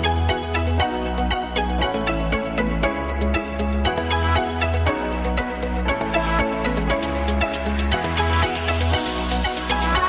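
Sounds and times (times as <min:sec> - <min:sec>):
electronic music with steady beat: 0:00.0 - 0:10.0.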